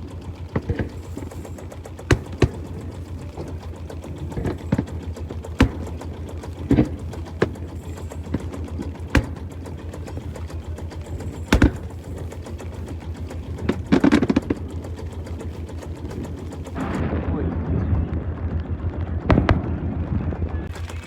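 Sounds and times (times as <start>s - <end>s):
brief rattle: 0.0s - 17.0s
boat engine throbbing: 0.0s - 21.0s
sharp knocks: 0.5s - 16.9s.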